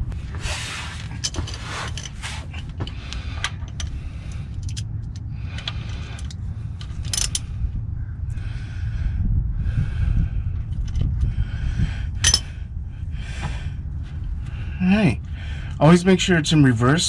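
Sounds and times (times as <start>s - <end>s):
steady low hum: 0.0s - 17.0s
hand tools clicking on metal: 7.0s - 7.4s, 12.2s - 12.5s.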